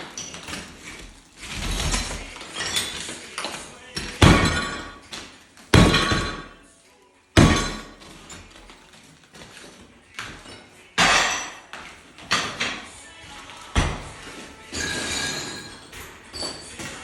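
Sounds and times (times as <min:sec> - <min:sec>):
clatter of shards: 0:00.0 - 0:06.6, 0:13.8 - 0:17.0.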